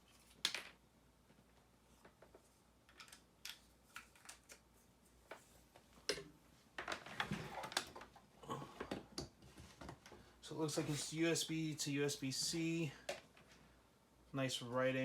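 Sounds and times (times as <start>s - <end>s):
clicks and rustles of cables: 1.3s - 10.2s.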